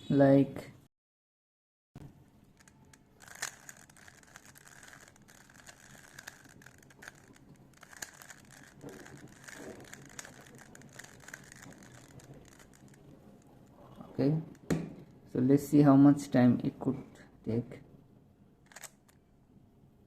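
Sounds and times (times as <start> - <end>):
plastic puzzle cube clicking: 2.6 - 13.1, 18.7 - 19.2.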